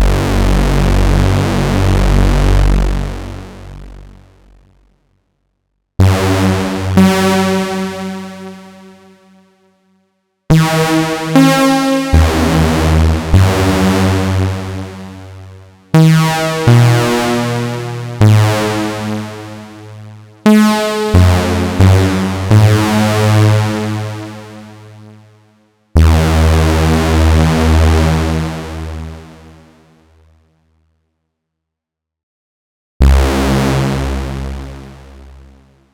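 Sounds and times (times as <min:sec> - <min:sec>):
synthesizer chords over bass: 0:00.0 - 0:04.8, 0:06.0 - 0:08.6, 0:10.5 - 0:24.5, 0:26.0 - 0:29.3.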